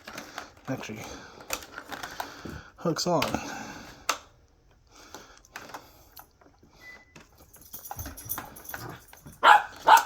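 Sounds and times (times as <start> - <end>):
power cord clicking and rustling: 0.0 - 4.3.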